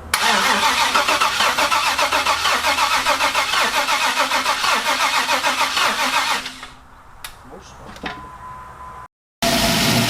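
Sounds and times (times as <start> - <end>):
engine cranking on starter: 0.1 - 6.8.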